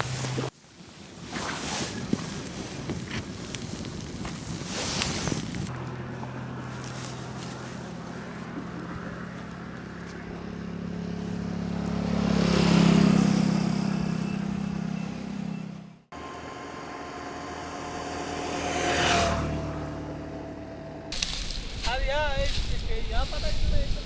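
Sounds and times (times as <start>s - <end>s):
vehicle engine passing by: 5.7s - 23.4s.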